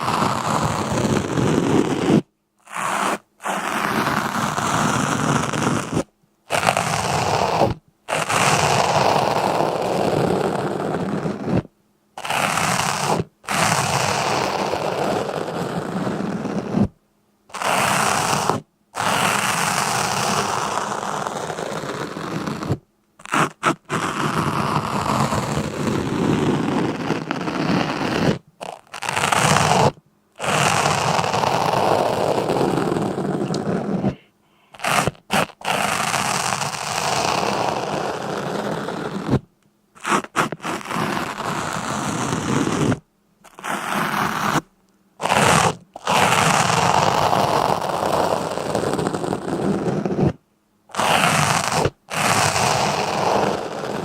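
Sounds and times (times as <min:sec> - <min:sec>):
scraping crunching noise: 0:17.6 - 0:54.0.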